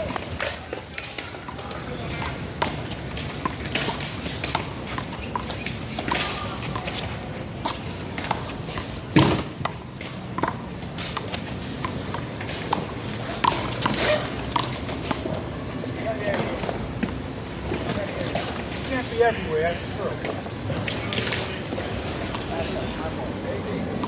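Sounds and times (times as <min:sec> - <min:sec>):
ball bouncing on court: 0:00.0 - 0:07.0, 0:07.6 - 0:15.2.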